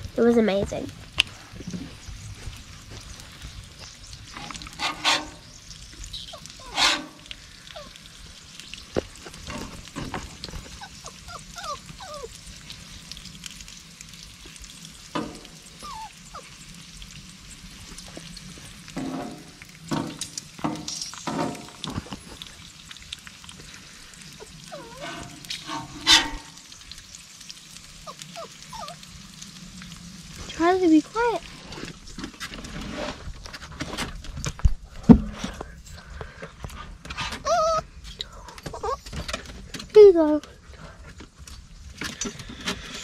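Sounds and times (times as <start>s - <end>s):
meat sizzling: 0.0s - 34.8s
dog whining and yelping: 6.2s - 7.1s, 7.7s - 8.0s, 10.7s - 12.5s, 15.8s - 16.6s, 24.4s - 26.3s, 28.0s - 29.1s, 37.2s - 37.9s, 38.6s - 39.2s.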